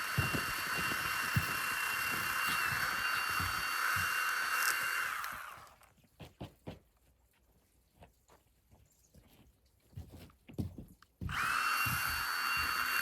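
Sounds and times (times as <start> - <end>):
power tool motor whining: 0.0 - 5.9, 11.3 - 13.0.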